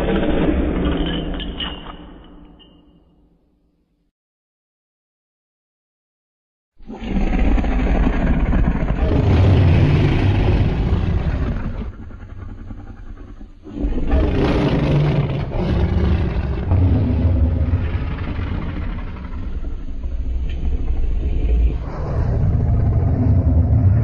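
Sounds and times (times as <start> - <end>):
giant monster roar: 6.9 - 24.0.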